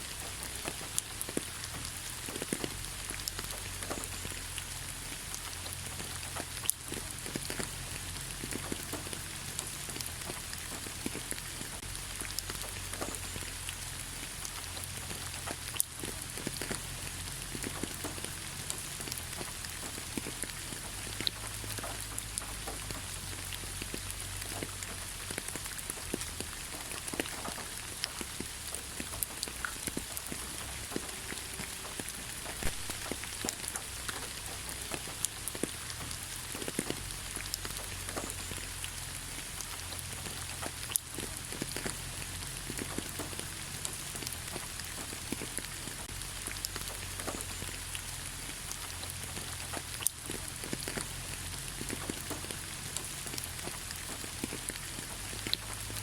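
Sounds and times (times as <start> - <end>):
gentle rain on leaves: 0.0 - 56.0.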